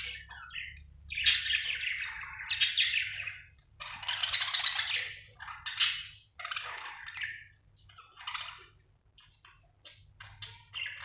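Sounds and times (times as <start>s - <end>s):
budgerigar chirping: 0.0s - 7.5s.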